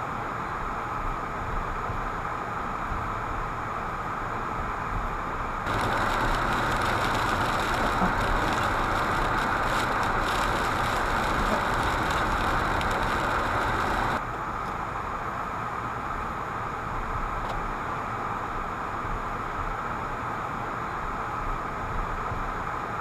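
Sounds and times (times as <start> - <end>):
car interior driving noise: 0.2 - 23.0
steady hiss: 5.7 - 14.2.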